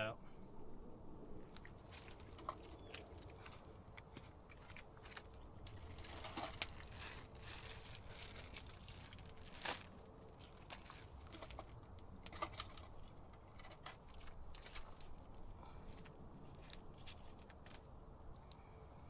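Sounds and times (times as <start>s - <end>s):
food packaging rustling: 1.8s - 13.1s.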